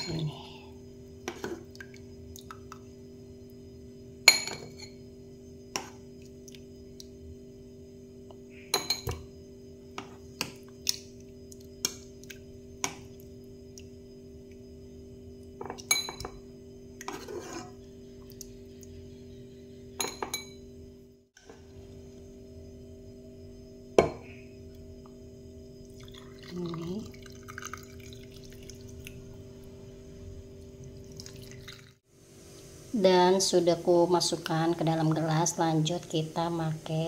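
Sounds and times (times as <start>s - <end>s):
spoon clinking against glass: 4.3s - 5.0s, 8.7s - 9.2s, 15.6s - 16.4s, 20.0s - 20.6s.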